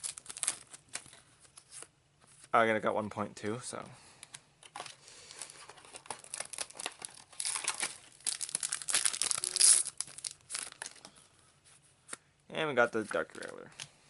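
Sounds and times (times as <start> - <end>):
plastic packaging crinkling and tearing: 0.0 - 1.9, 4.7 - 11.1.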